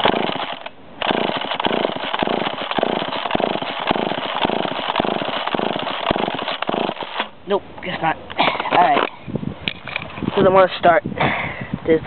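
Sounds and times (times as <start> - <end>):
chainsaw engine running roughly: 0.0 - 7.3.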